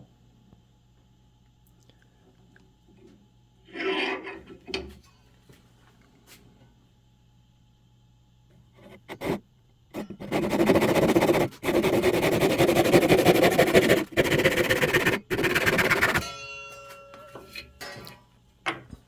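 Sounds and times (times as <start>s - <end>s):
hand saw cutting wood: 10.0s - 16.2s.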